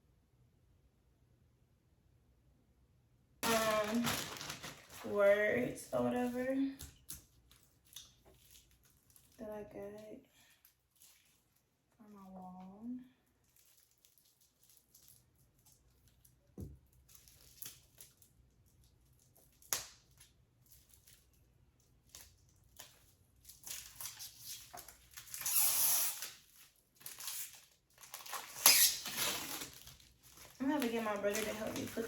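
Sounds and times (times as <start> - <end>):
packaging clicks and rustles: 3.4 - 5.1, 13.4 - 32.0
packaging ripping: 3.4 - 5.2, 7.0 - 9.4, 22.0 - 32.0.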